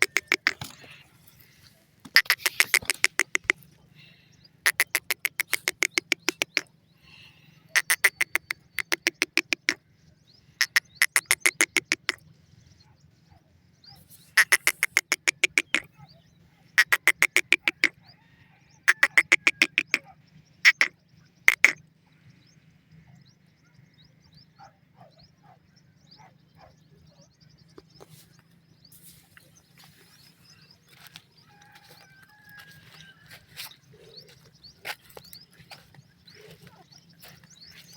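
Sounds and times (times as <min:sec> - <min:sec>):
bird calling harsh rapid notes: 0:00.0 - 0:01.0, 0:02.1 - 0:03.7, 0:04.7 - 0:06.7, 0:07.7 - 0:09.8, 0:10.6 - 0:12.2, 0:14.4 - 0:15.9, 0:16.8 - 0:18.0, 0:18.8 - 0:21.8.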